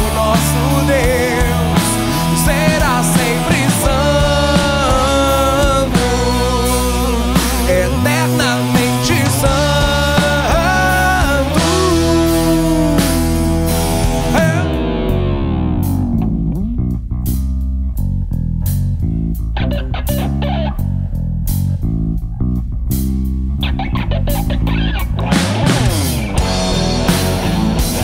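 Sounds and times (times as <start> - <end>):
bass guitar: 0.0 - 28.0
drum kit: 0.0 - 28.0
electric guitar: 0.0 - 28.0.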